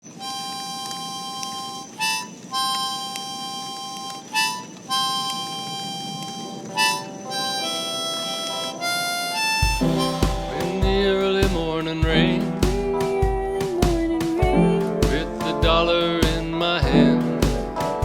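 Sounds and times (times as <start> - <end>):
harmonica playing: 0.1 - 13.0
instruments with low steady beat: 9.6 - 18.0.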